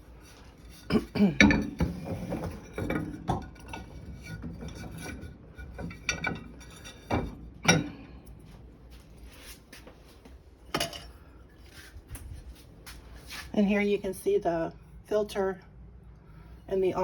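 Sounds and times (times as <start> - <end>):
dishes clinking: 0.9 - 8.1, 10.7 - 11.2.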